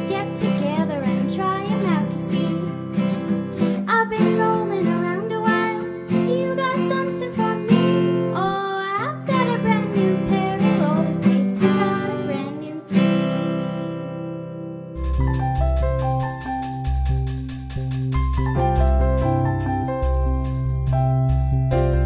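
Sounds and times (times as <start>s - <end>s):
person singing: 0.0s - 13.9s
acoustic guitar strumming: 0.0s - 20.8s.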